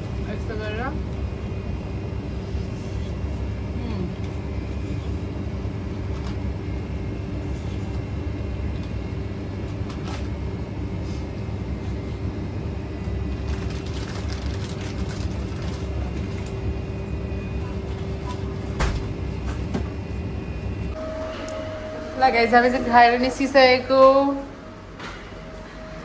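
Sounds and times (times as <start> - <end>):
constant low hum: 0.0 - 26.0
low rumble: 20.9 - 26.0.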